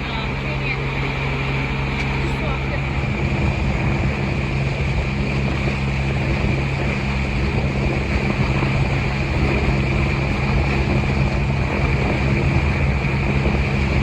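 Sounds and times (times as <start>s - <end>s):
boat engine humming: 0.0s - 14.0s
water noise: 0.0s - 14.0s
wind: 0.0s - 14.0s.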